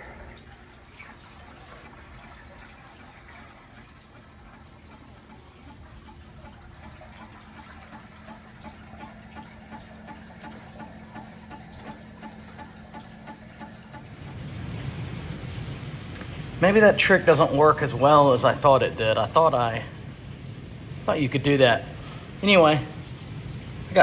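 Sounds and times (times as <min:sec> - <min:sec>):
hard rain hissing: 0:14.1 - 0:24.0.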